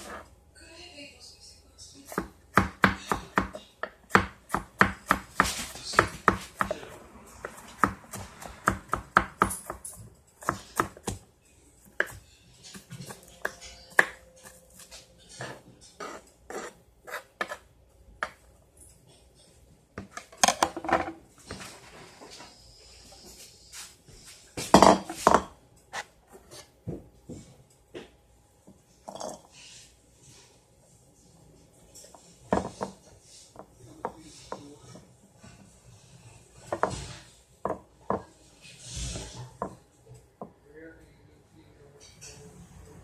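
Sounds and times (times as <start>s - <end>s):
knife chopping on a cutting board: 2.1s - 11.2s, 11.8s - 18.4s.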